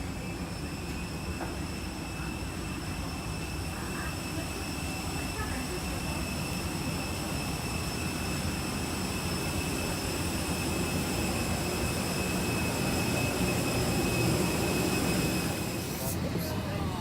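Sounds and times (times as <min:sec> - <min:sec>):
airliner rumble and hiss: 0:00.0 - 0:17.0
high-pitched whines: 0:00.1 - 0:16.8.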